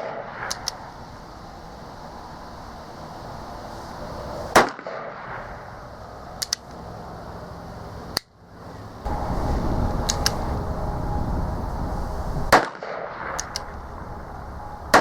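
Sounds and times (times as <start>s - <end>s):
light clicks: 6.4s - 6.8s.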